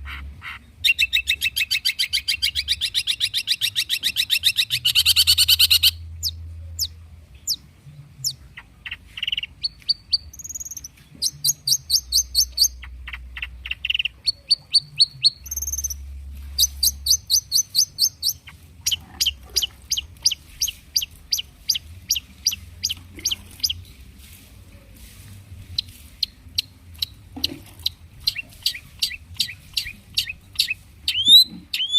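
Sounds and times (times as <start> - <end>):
bird whistles and sharp chips: 28.3 - 31.9.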